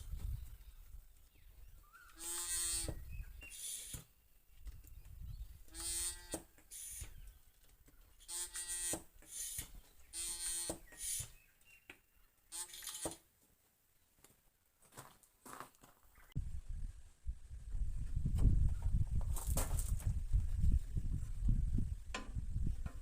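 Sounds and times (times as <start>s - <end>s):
power tool motor buzzing: 2.1s - 4.1s, 5.7s - 7.1s, 8.2s - 11.3s, 12.5s - 13.2s.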